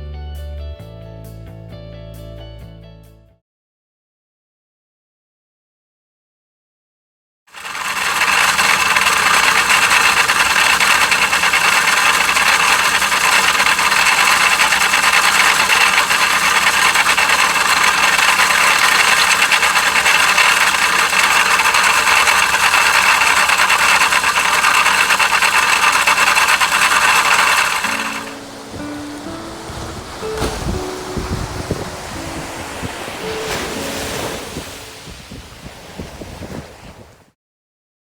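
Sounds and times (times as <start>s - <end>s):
grinding rasp of water pump: 7.5s - 34.0s
engine running: 7.5s - 35.1s.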